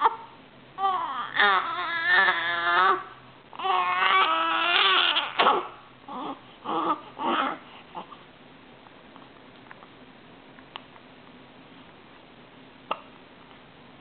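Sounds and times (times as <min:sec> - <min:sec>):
baby crying: 0:00.0 - 0:08.1.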